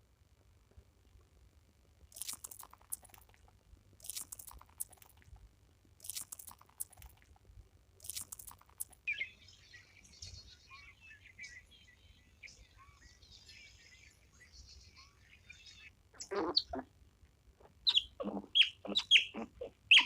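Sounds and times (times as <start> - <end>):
animal chewing crunchy food: 1.9 - 9.1
birds chirping: 8.0 - 16.9, 17.6 - 20.0.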